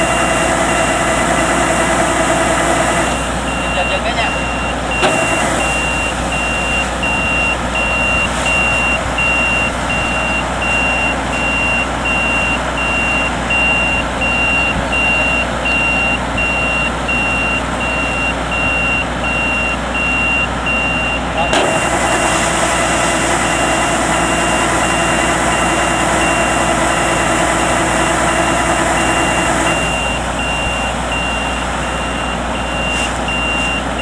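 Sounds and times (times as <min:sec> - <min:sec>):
combine harvester engine running: 0:00.0 - 0:34.0
electronic warning beeper: 0:03.5 - 0:21.8.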